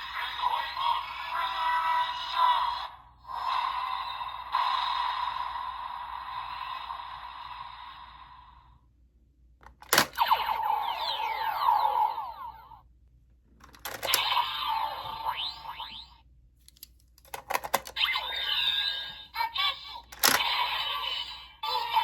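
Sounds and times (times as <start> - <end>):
toy button click: 20.1 - 20.6.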